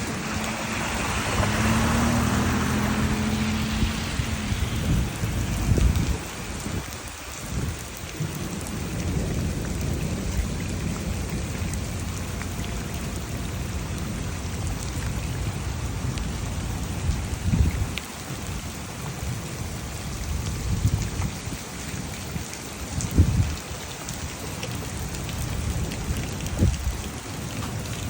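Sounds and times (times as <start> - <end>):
engine-like hum: 0.0 - 6.6
heavy rain: 0.0 - 28.0.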